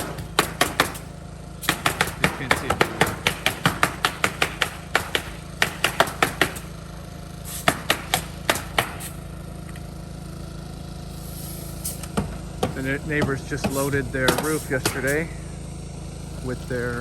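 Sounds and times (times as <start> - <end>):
hammer blows: 0.0 - 6.8, 7.5 - 9.2, 11.8 - 15.5
steady low hum: 0.0 - 17.0.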